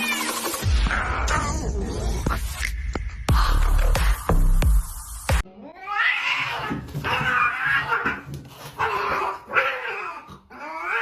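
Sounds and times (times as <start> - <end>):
loud music: 0.0 - 5.4
cats yowling: 5.5 - 11.0.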